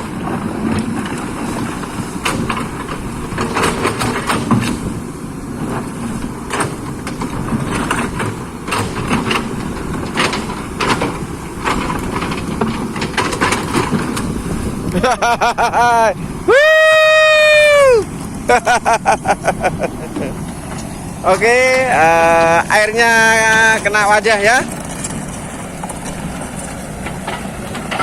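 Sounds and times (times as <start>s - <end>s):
excavator diesel engine running: 0.0s - 28.0s
metallic clanks and knocks: 6.5s - 14.3s.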